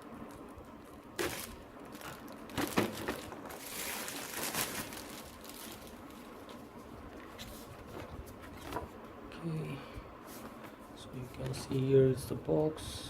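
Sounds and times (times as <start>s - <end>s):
plastic packaging crinkling: 0.0s - 8.8s.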